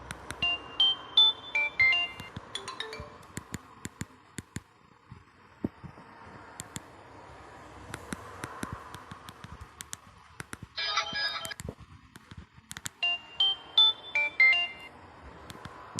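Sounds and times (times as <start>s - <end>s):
phone ringtone: 0.4s - 3.4s, 10.8s - 11.6s, 13.0s - 14.9s
phone keys clicking: 1.2s - 4.6s.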